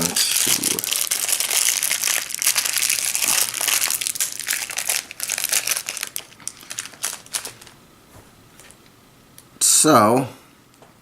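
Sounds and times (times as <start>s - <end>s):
plastic bag crinkling: 0.0s - 7.8s.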